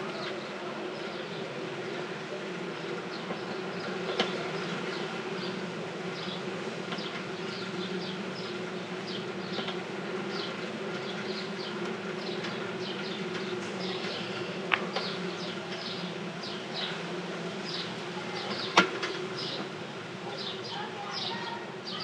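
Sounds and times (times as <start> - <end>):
bicycle drivetrain buzzing: 2.7 - 16.9.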